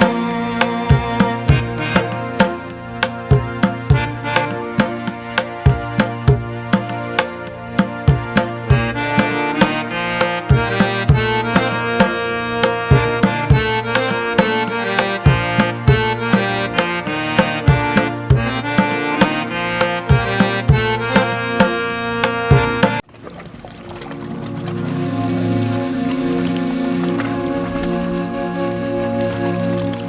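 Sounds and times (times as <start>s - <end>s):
sustained melody: 0.0s - 23.0s, 24.0s - 30.0s
tabla drumming: 0.0s - 23.0s.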